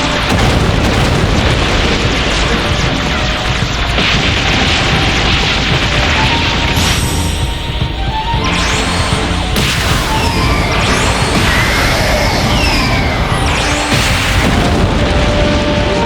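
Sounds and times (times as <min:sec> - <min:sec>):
music: 0:00.0 - 0:16.0
rumbling booms and blasts: 0:00.0 - 0:16.0
bright hiss: 0:04.6 - 0:14.7
sharp high sweep: 0:06.0 - 0:14.8.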